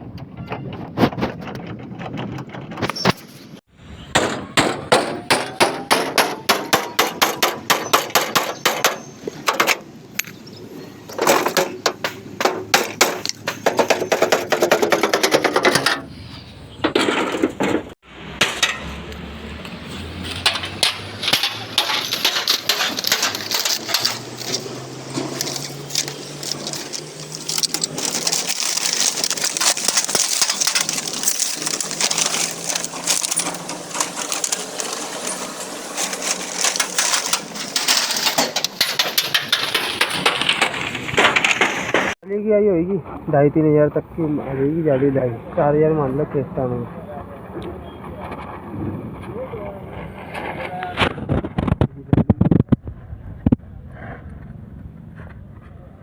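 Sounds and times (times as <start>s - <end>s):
hammer striking sheet metal: 4.1s - 9.8s, 18.2s - 19.1s.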